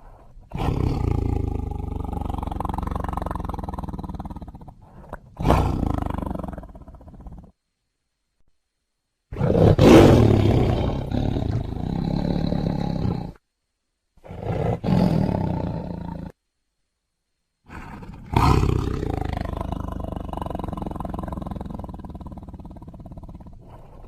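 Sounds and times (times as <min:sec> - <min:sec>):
tiger roaring: 0:00.0 - 0:07.5, 0:09.3 - 0:13.4, 0:14.2 - 0:16.4, 0:17.7 - 0:24.0.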